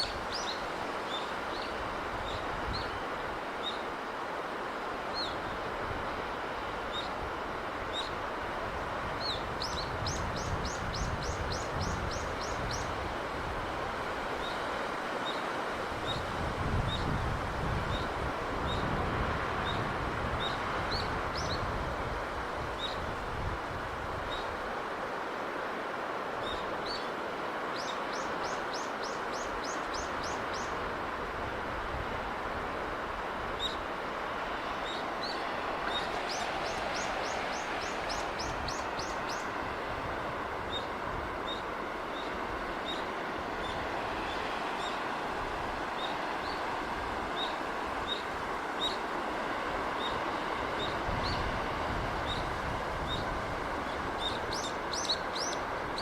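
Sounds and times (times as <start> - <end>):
sea breeze: 0.0 - 56.0
small birds chirping: 54.2 - 56.0.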